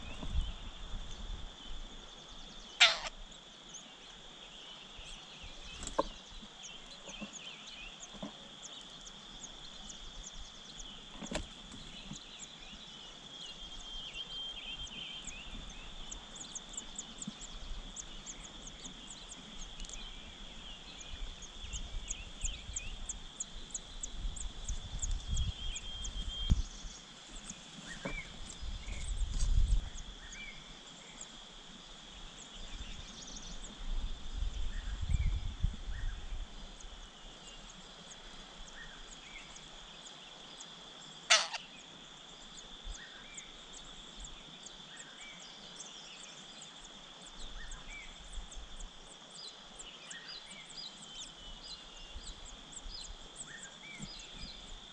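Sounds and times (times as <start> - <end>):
rapid high bird chirps: 2.8 - 3.2, 41.3 - 41.7.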